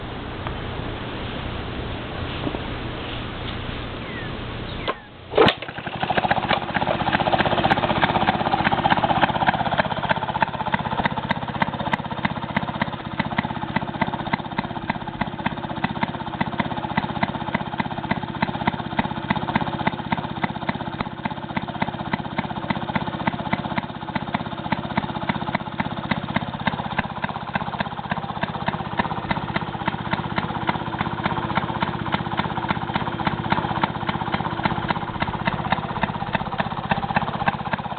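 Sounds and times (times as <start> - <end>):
two-stroke engine running: 3.4 - 37.9
engine starting pop: 4.8 - 8.7.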